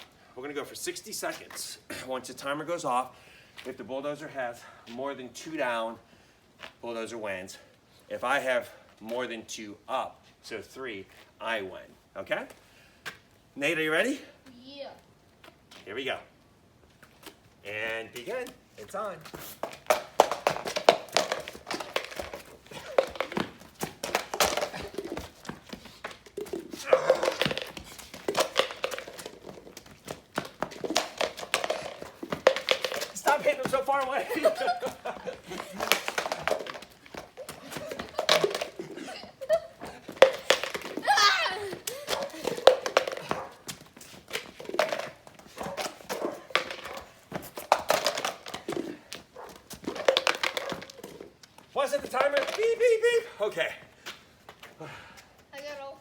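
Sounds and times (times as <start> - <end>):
hurried footsteps and scuffling: 16.8 - 55.7
cones knocking and clattering: 19.6 - 51.3, 52.0 - 52.8.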